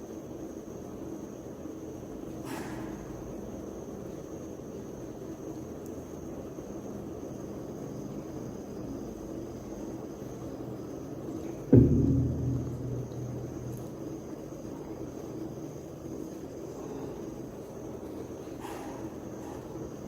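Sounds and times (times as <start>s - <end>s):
low background hum: 0.0s - 20.0s
faint high whine: 6.7s - 20.0s
loud thump: 11.7s - 14.4s.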